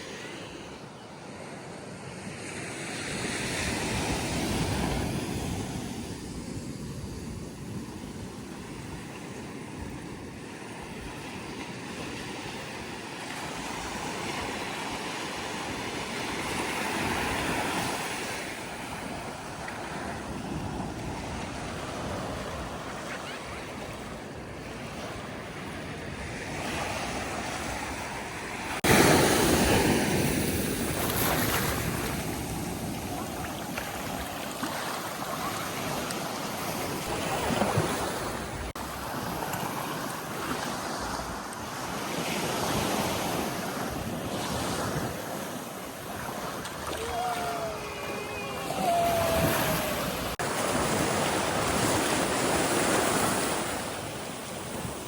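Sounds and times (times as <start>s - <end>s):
ocean surf breaking: 13.7s - 55.0s.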